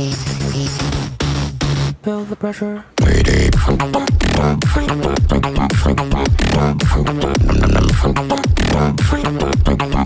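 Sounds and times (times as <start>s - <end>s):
beatboxing bass drops: 0.0s - 2.0s, 3.0s - 10.0s
percussive mouth sounds: 3.0s - 10.0s.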